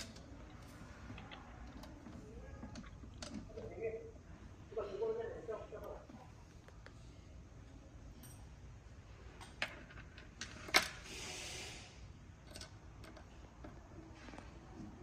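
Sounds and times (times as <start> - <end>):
brief hiss: 11.0 - 12.1.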